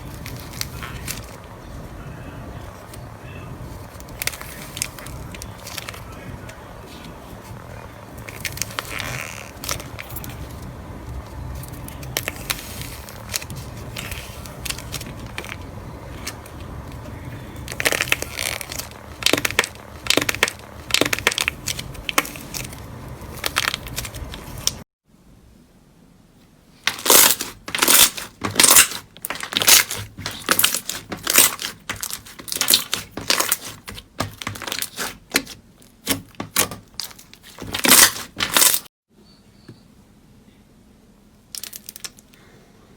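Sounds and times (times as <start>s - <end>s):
low steady hum: 0.0s - 27.0s
crunchy slime crackling: 3.7s - 24.8s, 26.9s - 38.9s.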